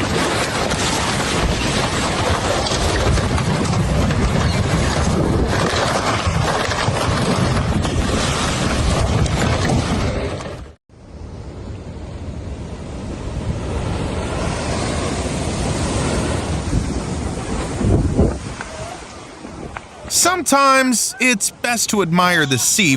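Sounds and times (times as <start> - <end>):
wind buffeting microphone: 0.0 - 10.5, 15.4 - 19.8
floodwater rushing: 20.1 - 22.9.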